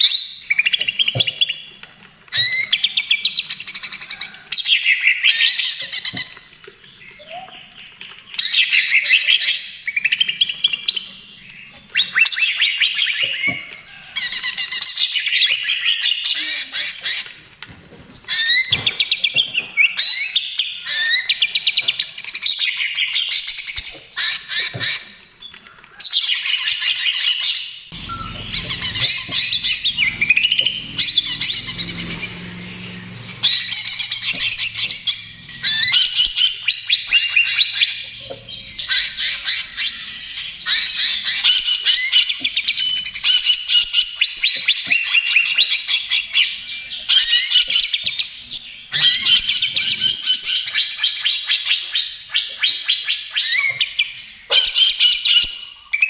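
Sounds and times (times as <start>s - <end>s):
bird singing rapid chattering notes: 28.0s - 41.8s.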